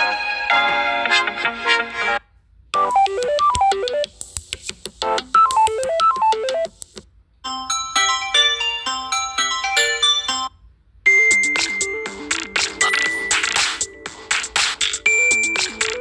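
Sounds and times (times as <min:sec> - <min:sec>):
electronic ringtone melody: 0:05.2 - 0:06.7, 0:11.1 - 0:16.0
chiming ringtone: 0:07.4 - 0:14.3, 0:15.0 - 0:16.0.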